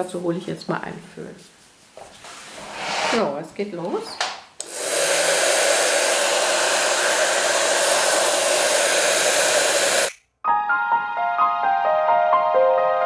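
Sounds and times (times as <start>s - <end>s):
hair dryer blowing: 4.6s - 10.2s
instrumental music: 10.4s - 13.0s.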